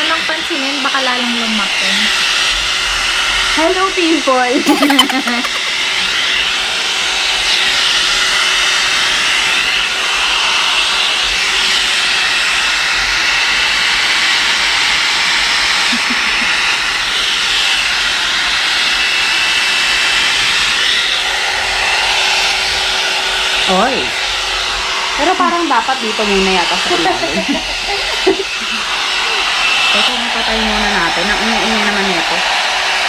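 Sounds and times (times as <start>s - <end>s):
hair dryer blowing air: 26.0s - 33.0s.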